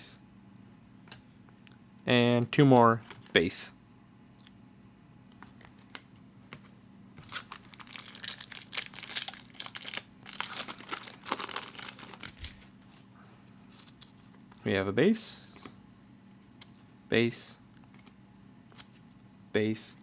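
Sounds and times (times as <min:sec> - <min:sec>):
wrapper crinkling and tearing: 0:07.2 - 0:12.7.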